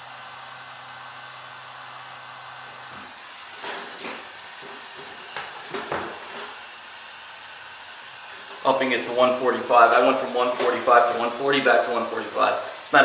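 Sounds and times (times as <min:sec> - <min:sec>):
heat gun blowing: 0:02.7 - 0:13.0.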